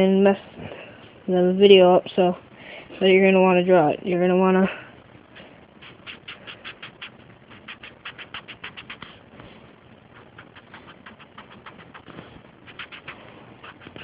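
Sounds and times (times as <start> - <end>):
marker scratching on paper: 5.8 - 9.2, 10.2 - 14.0.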